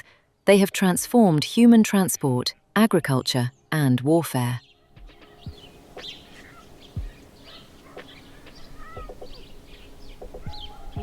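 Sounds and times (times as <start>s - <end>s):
small birds chirping: 3.3s - 11.0s
soft low thuds: 5.0s - 7.3s.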